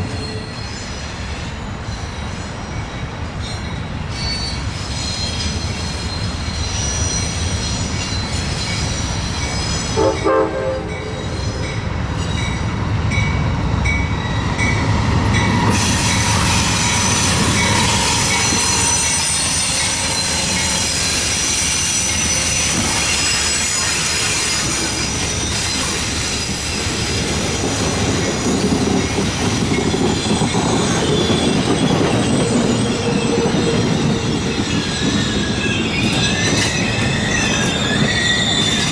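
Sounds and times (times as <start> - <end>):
train rumbling and clattering: 0.0 - 38.9
train wheel squeal: 0.0 - 38.9
train horn blast: 10.0 - 11.2.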